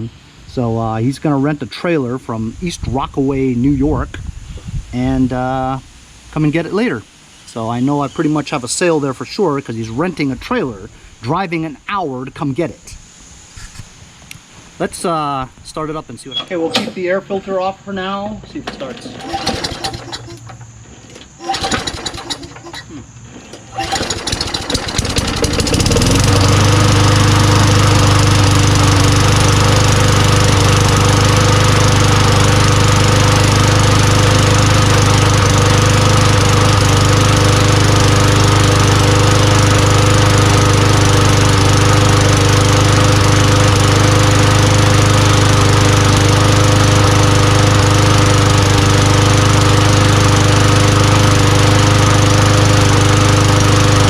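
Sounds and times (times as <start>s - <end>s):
lawn mower engine running: 18.6s - 54.0s
lawn mower pull-start: 18.6s - 54.0s.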